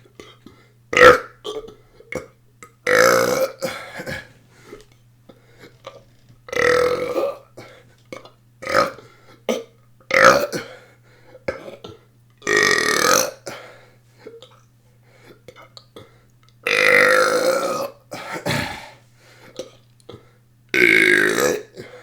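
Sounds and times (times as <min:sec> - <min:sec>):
person burping: 0:02.8 - 0:04.4, 0:05.7 - 0:07.5, 0:16.7 - 0:19.0, 0:20.8 - 0:21.9.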